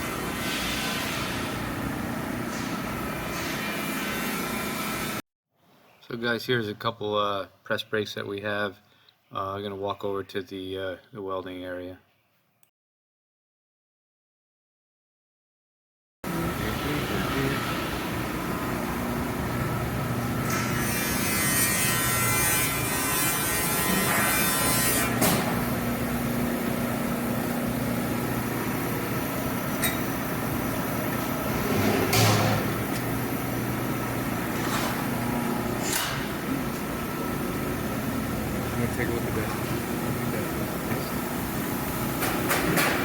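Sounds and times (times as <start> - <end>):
machinery hum: 16.3 - 43.0.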